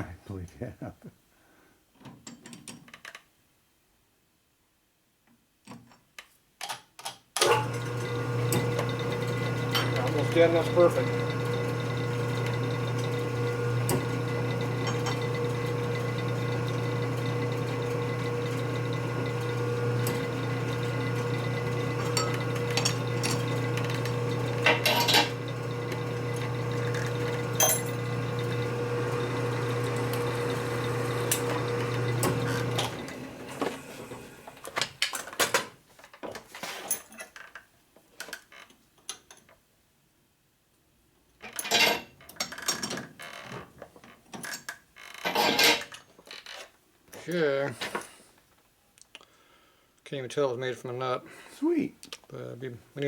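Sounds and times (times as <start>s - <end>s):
machine tool motor humming: 7.6s - 34.6s.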